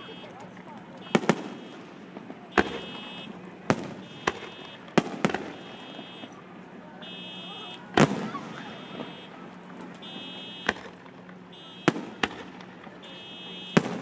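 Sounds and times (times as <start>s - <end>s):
fireworks bursting: 0.0s - 14.0s
high electronic beep: 2.6s - 3.3s.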